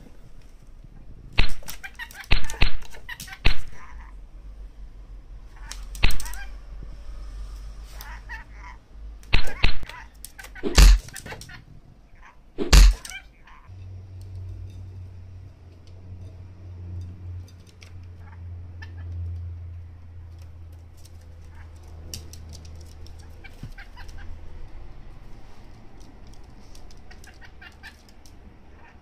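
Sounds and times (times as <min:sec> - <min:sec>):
loud bird squawks: 0:05.5 - 0:06.6, 0:07.9 - 0:08.8, 0:09.4 - 0:13.7.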